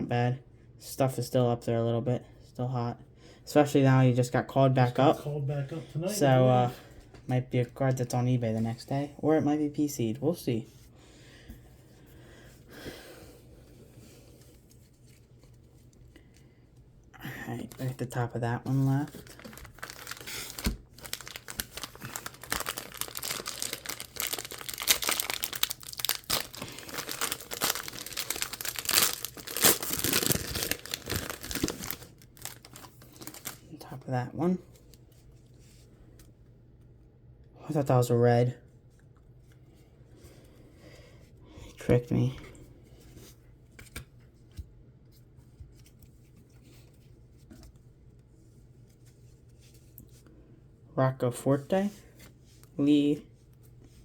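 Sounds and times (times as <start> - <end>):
low room hum: 0.0 - 54.0
wrapper tearing and crinkling: 19.0 - 33.6.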